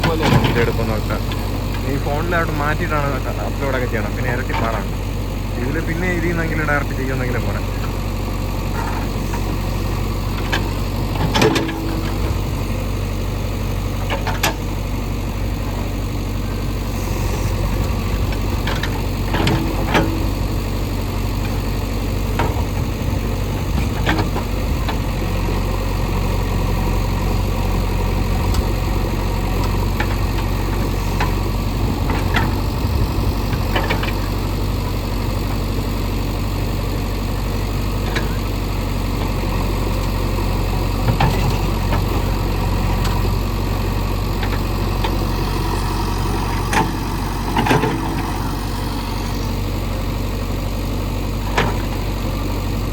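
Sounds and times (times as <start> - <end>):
knocks and clunks: 0.0 - 1.8, 8.7 - 12.6, 13.9 - 14.7, 17.3 - 20.6, 22.3 - 25.6, 28.2 - 34.4, 40.9 - 43.4, 44.3 - 49.2, 51.5 - 52.0
diesel engine running: 0.0 - 52.9.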